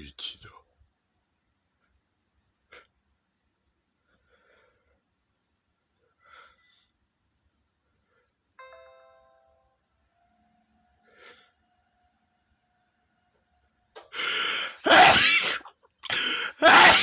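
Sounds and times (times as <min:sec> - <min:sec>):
faint breathy sounds: 0:04.0 - 0:08.6, 0:10.9 - 0:11.9.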